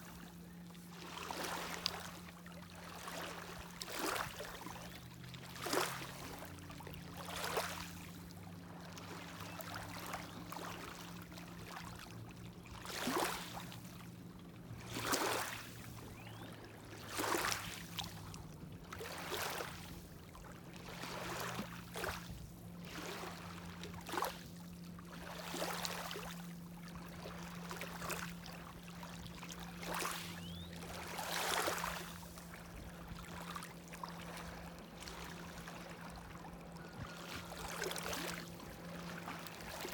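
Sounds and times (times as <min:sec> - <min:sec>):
boat motor humming: 0:00.0 - 0:39.9
waves lapping against shore: 0:00.0 - 0:39.9.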